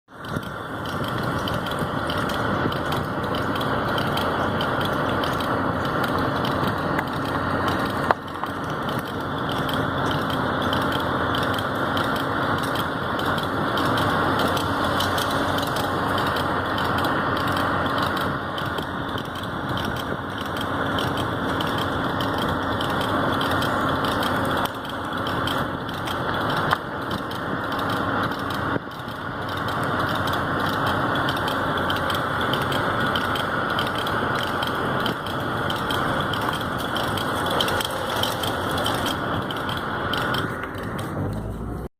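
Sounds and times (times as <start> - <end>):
road and engine noise: 0.0 - 41.9
fast wheel clicking: 0.1 - 41.9.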